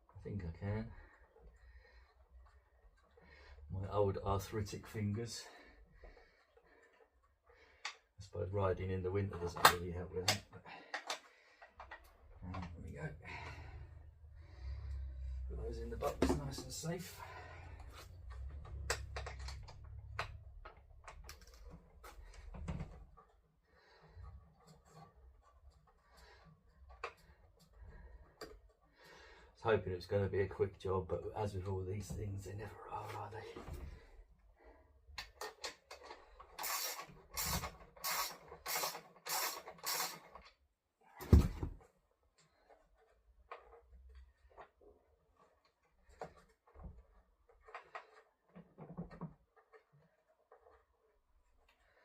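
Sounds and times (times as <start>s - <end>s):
clicks and taps of tools: 9.5s - 12.8s.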